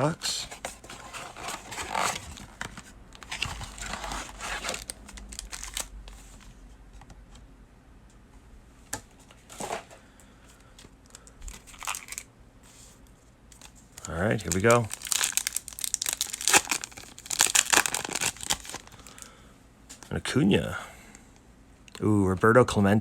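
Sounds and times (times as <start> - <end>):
card pack wrappers tearing and crinkling: 1.0 - 6.5, 11.5 - 12.3, 13.5 - 19.3.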